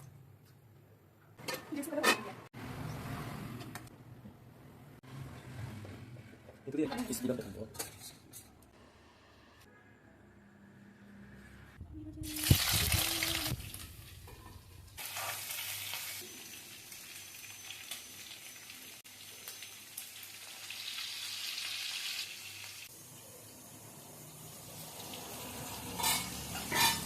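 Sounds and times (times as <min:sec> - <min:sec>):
food sizzling in hot oil: 0:12.2 - 0:27.0.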